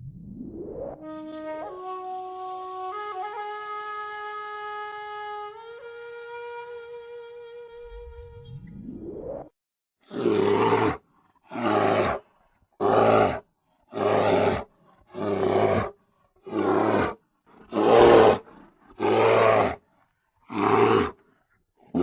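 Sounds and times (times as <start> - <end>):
bear roaring: 10.0 - 19.8, 20.4 - 22.0.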